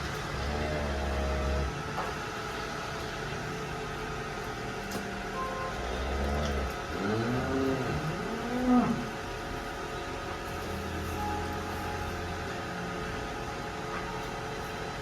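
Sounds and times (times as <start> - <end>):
steady mechanical hum: 0.0 - 15.0
cow mooing: 0.4 - 1.7, 5.7 - 9.2.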